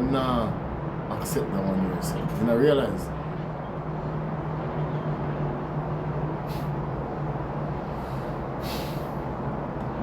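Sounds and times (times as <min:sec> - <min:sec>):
vehicle engine hum and rumble: 0:00.0 - 0:10.0
brief hiss: 0:06.4 - 0:06.8, 0:08.0 - 0:09.2.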